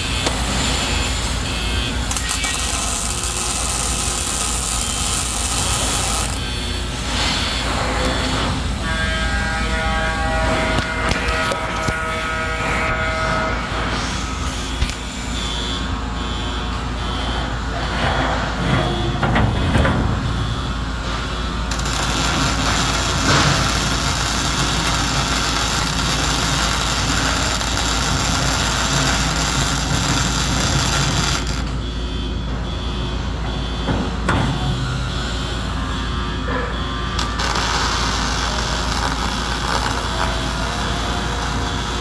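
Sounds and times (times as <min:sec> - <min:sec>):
welding arc hissing: 0:00.0 - 0:12.0, 0:21.7 - 0:31.8, 0:37.2 - 0:42.0
low workshop hum: 0:00.0 - 0:42.0.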